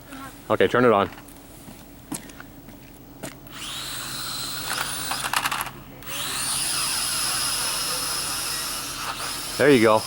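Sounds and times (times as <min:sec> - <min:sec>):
drone motors whining: 0:03.5 - 0:10.0.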